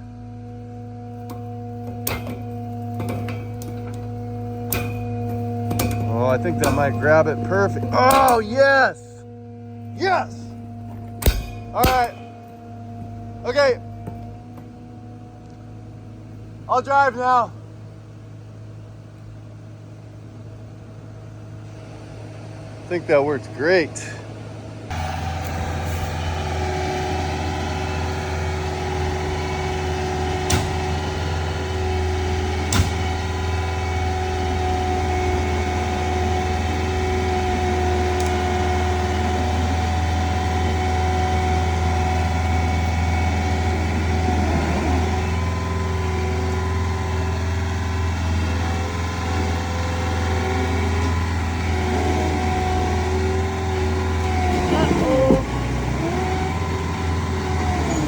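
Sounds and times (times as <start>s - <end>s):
heavy machine engine running: 0.0s - 58.0s
sharp knocks: 10.9s - 12.4s, 30.2s - 31.4s, 32.2s - 33.4s.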